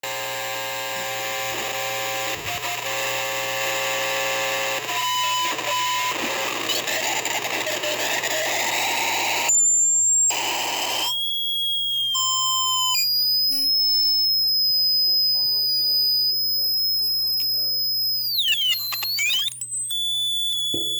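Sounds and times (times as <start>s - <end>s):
feedback tones: 5.0s - 20.9s.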